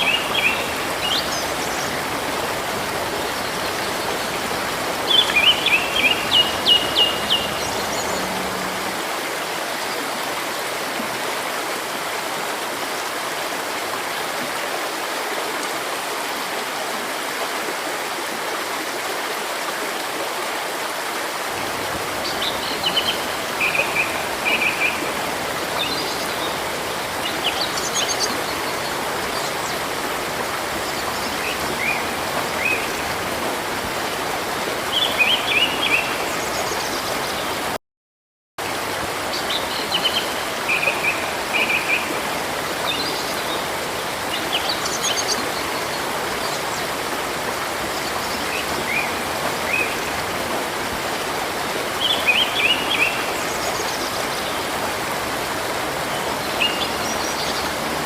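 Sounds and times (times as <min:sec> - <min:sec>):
songbirds singing: 0:00.0 - 0:09.0
stream water running: 0:00.0 - 0:37.8, 0:38.6 - 0:58.0.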